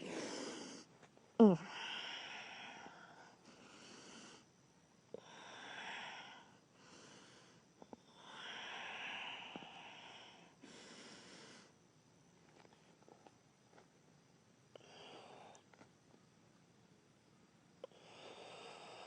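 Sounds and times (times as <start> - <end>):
slow deep breathing: 0.0 - 0.9, 1.6 - 4.5, 5.1 - 11.8, 17.8 - 19.0.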